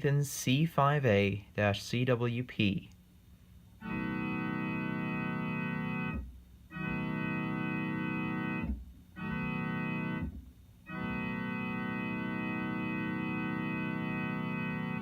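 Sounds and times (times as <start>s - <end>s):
electronic keyboard train horn blasts: 3.8s - 15.0s.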